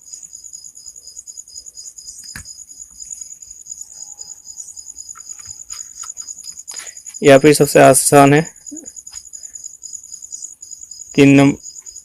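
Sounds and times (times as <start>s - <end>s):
cricket chirping: 0.0s - 12.0s.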